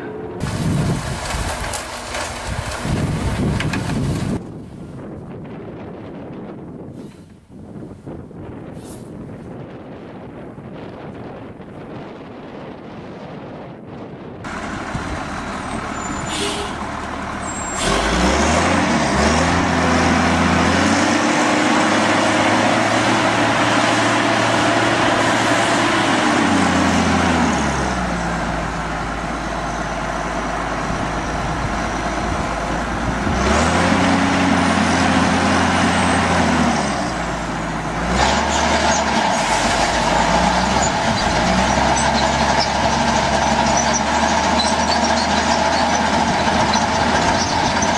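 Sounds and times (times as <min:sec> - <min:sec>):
heavy machine engine revving: 0:00.0 - 0:04.4, 0:14.5 - 0:47.9.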